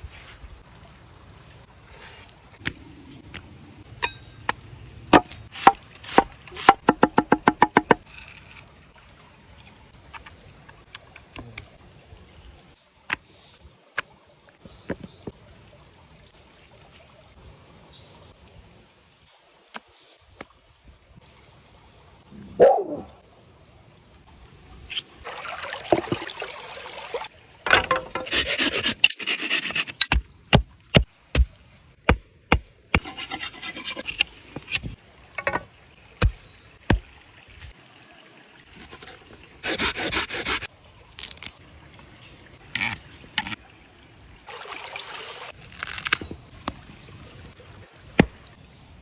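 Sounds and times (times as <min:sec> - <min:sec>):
knife chopping on wooden board: 0:05.2 - 0:08.0.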